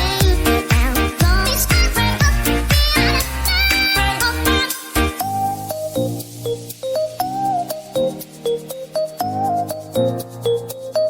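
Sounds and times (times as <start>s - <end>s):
deep bass: 0.0s - 4.6s
synth melody: 4.4s - 11.0s.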